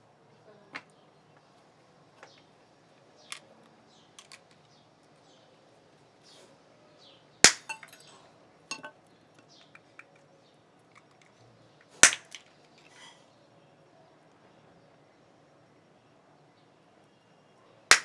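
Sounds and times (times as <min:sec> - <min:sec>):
clicks of small hard parts: 0:04.2 - 0:04.6, 0:07.5 - 0:08.1, 0:12.0 - 0:12.5
loud snap: 0:07.5 - 0:07.9, 0:12.0 - 0:12.4.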